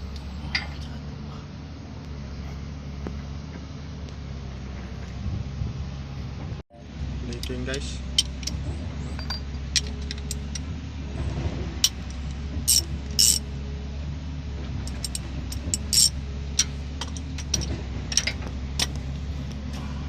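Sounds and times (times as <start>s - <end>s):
running engine drone: 0.0s - 20.0s
metal tools clinking on engine: 7.2s - 10.7s, 11.8s - 13.5s, 14.8s - 19.8s.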